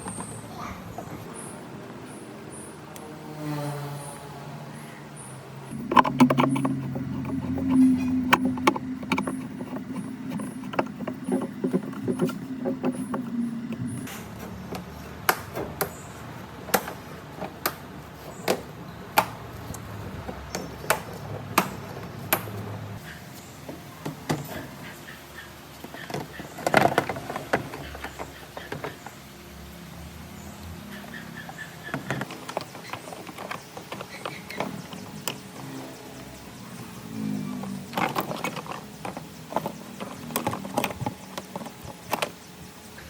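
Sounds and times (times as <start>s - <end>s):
sharp taps and knocks: 5.7s - 16.0s.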